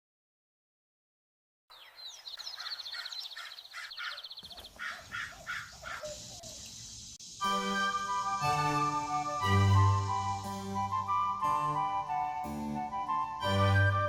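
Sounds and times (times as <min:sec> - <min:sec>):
birds making harsh calls: 0:01.7 - 0:07.1
fast high bird trill: 0:01.8 - 0:06.8
music: 0:07.3 - 0:14.0.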